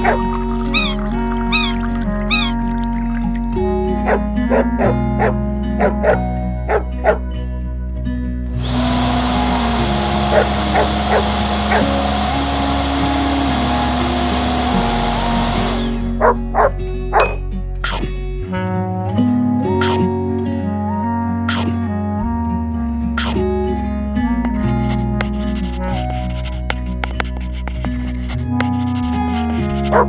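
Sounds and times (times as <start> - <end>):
puppy yapping: 0.0 - 2.6, 4.1 - 7.2, 16.2 - 18.0
light plucked music: 0.0 - 30.0
steady high whine: 8.5 - 16.4.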